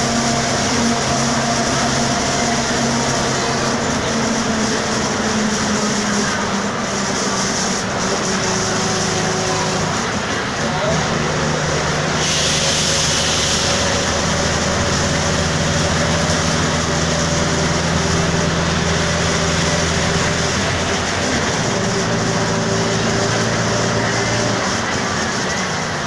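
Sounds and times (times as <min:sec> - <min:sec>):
bus diesel engine running: 0:00.0 - 0:26.0
air hiss: 0:11.9 - 0:15.9.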